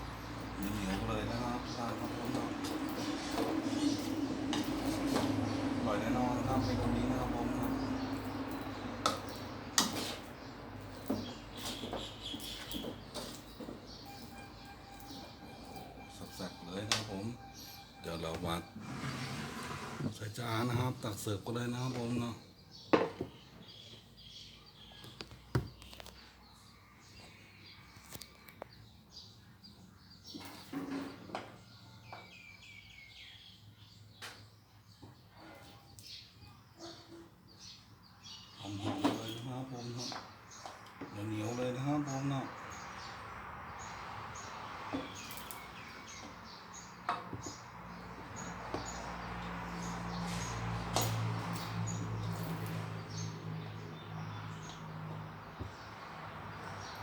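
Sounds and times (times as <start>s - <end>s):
small birds chirping: 0.0s - 18.8s, 20.1s - 57.0s
small bird chirping: 10.9s - 16.6s.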